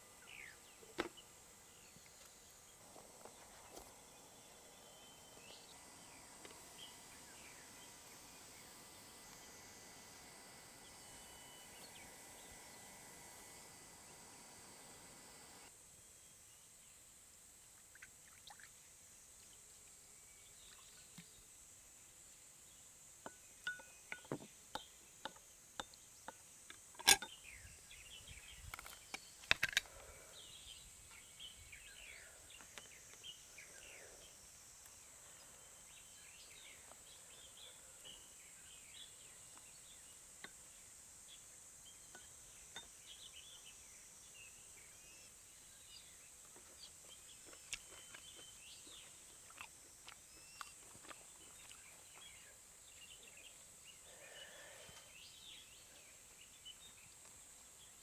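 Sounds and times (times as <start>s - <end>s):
high insect buzz: 0.0s - 15.7s.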